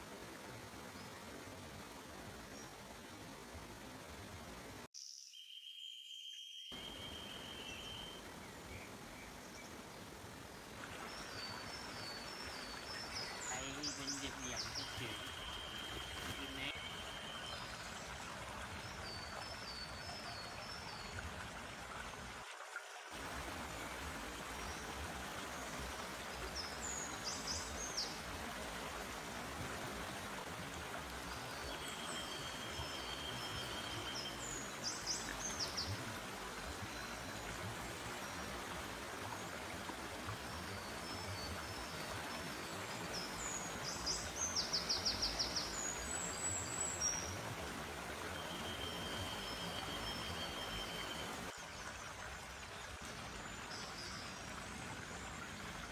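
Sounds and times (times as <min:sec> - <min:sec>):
stream flowing: 0:00.0 - 0:04.9, 0:06.7 - 0:55.9
birds calling: 0:11.7 - 0:17.3.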